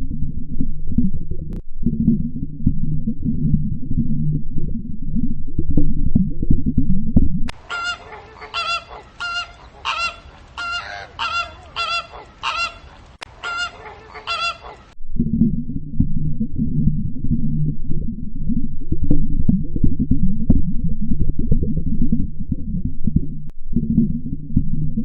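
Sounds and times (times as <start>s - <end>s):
loud low rumbling: 0.0s - 7.7s, 14.8s - 25.0s
goose honking: 7.5s - 15.0s.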